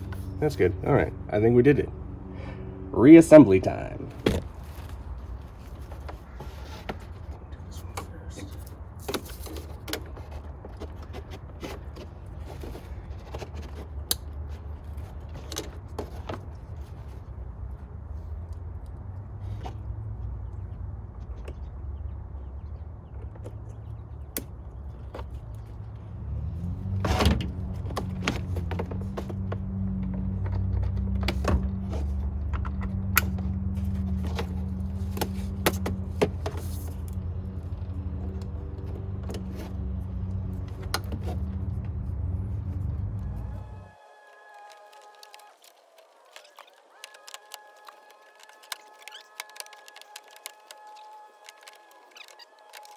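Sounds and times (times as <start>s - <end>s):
clicks and rattles of car trim parts: 4.1s - 17.2s, 22.9s - 52.9s
plastic trim clicking and knocking: 46.4s - 52.9s.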